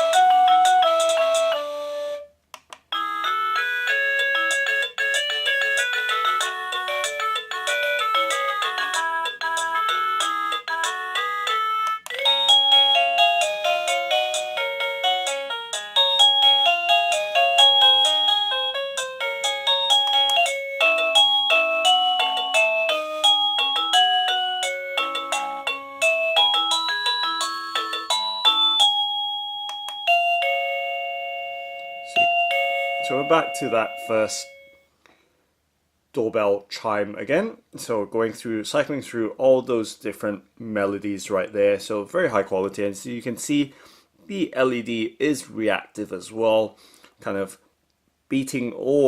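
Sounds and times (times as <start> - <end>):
doorbell chime melody: 0.0 - 2.2, 3.0 - 34.9
two-note ding-dong chime: 26.7 - 34.8.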